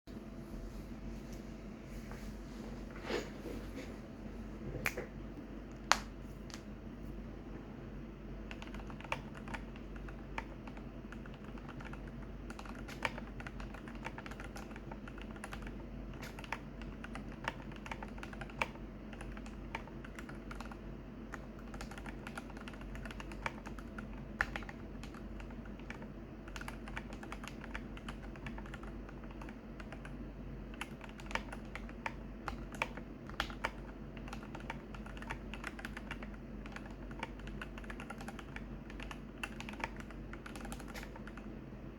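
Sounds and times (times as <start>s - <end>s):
mechanical keyboard typing: 8.4s - 41.5s.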